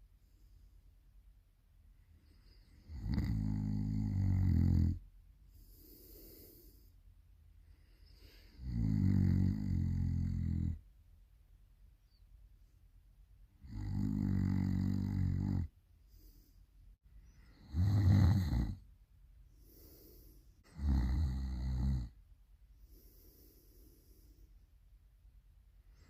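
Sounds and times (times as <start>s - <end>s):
loud snoring: 2.8s - 5.0s, 8.6s - 10.8s, 13.6s - 15.7s, 17.5s - 18.8s, 20.7s - 22.2s.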